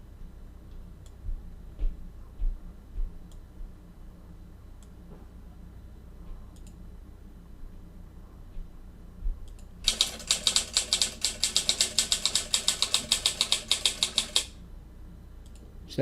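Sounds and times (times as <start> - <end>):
typewriter keystroke clicks: 9.8 - 14.6.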